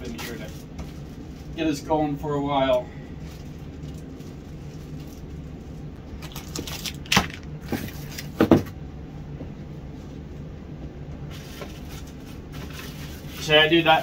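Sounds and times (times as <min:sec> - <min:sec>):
steady low hum: 0:00.0 - 0:14.0
food packages knocking and rustling: 0:06.2 - 0:08.8.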